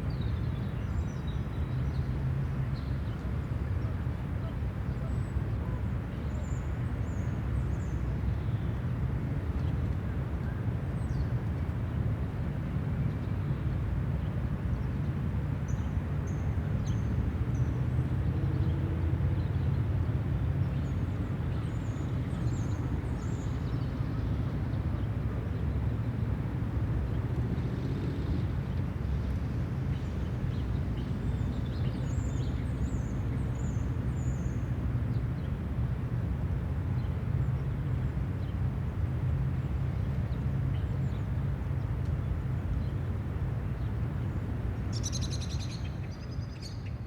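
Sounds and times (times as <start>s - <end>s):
city traffic rumble: 16.1s - 45.0s.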